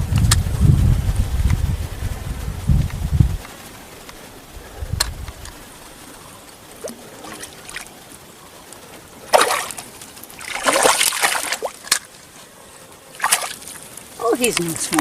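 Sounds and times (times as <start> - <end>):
fish splashing at surface: 9.3 - 12.1, 13.2 - 13.8.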